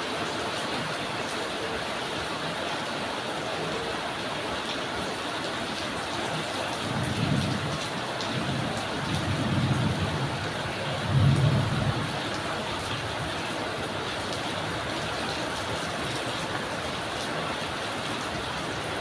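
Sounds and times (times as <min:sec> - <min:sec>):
drizzling rain: 0:00.0 - 0:19.0.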